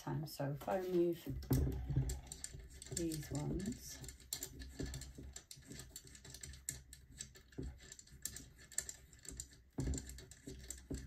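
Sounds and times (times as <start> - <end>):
screwdriver and metal parts clicking: 1.4 - 11.0.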